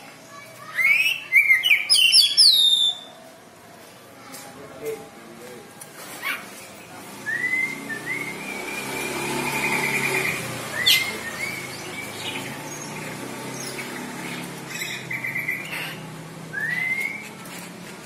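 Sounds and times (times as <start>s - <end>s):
songbird whistles and trills: 0.7s - 3.1s, 7.2s - 13.0s, 14.7s - 17.4s.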